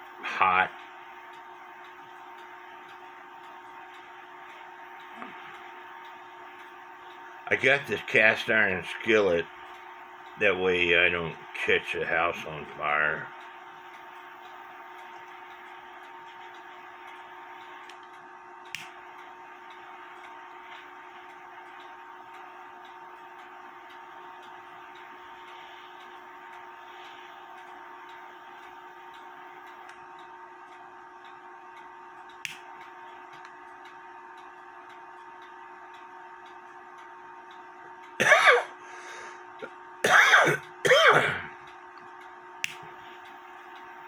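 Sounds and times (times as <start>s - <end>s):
faint hum: 0.0s - 44.0s
mechanical clock ticking: 0.6s - 38.3s, 39.6s - 44.0s
sharp click: 32.3s - 33.6s, 42.6s - 42.9s
person clearing throat: 38.2s - 38.8s, 40.1s - 41.5s.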